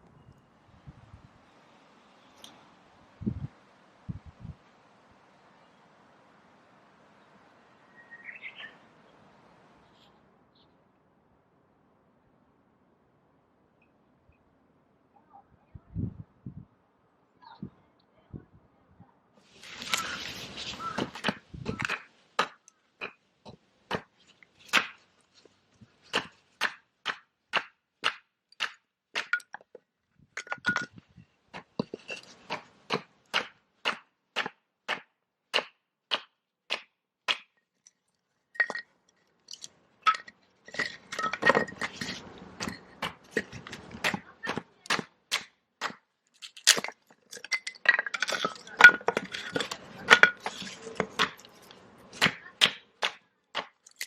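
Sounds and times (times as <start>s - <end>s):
scraping and clinking: 30.4s - 31.0s, 38.6s - 44.2s, 46.4s - 51.8s.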